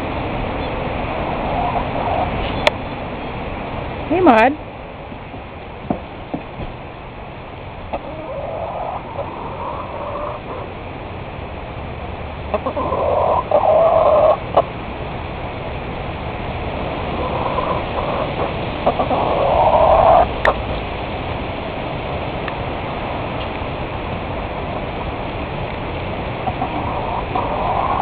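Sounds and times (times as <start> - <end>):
chickens calling: 0.6 - 2.7, 7.9 - 10.8, 12.5 - 14.7, 17.0 - 20.8, 26.4 - 28.0.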